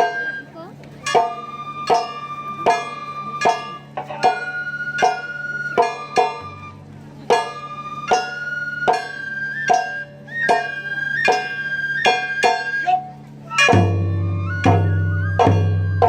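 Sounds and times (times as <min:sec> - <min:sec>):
plucked string strikes: 0:00.8 - 0:16.0
long high flute note: 0:07.4 - 0:16.0.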